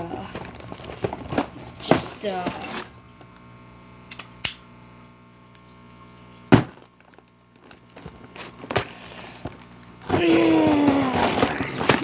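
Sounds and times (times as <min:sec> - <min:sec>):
thump on cardboard box: 0:06.5 - 0:06.8.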